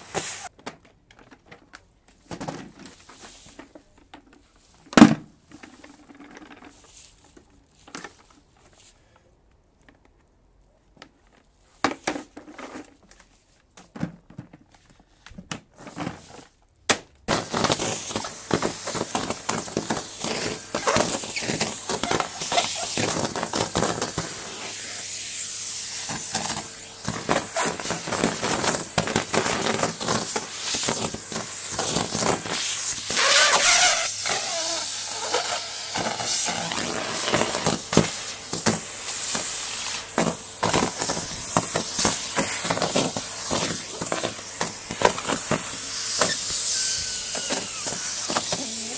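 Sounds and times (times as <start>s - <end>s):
leaves crackling in vacuum hose: 0.0s - 0.5s, 17.3s - 48.9s
vacuum cleaner hissing: 0.0s - 0.5s, 17.3s - 48.9s.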